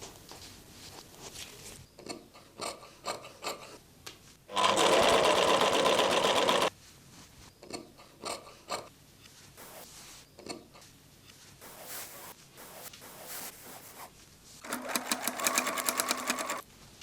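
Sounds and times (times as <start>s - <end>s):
sewing machine stitching: 4.5s - 6.7s, 14.6s - 16.6s.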